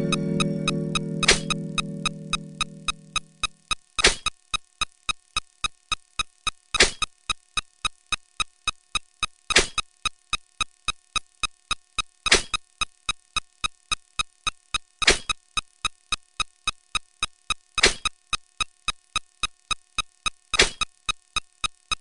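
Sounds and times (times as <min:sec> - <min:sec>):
short electronic blips: 0:00.0 - 0:08.1.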